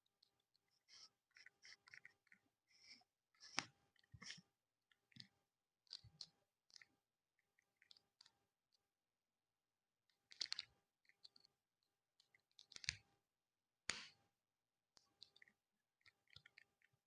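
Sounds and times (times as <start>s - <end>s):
plastic model parts clicking: 10.2s - 11.5s, 12.3s - 13.0s.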